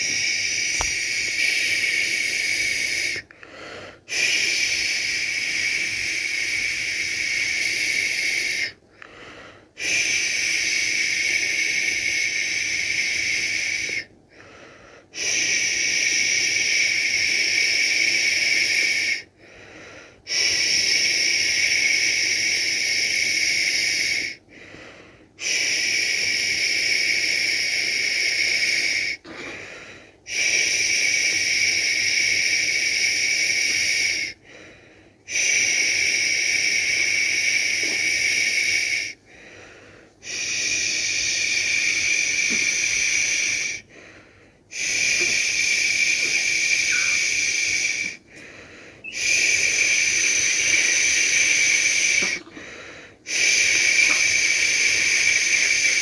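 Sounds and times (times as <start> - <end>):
person shushing: 44.8 - 48.1, 49.0 - 52.6.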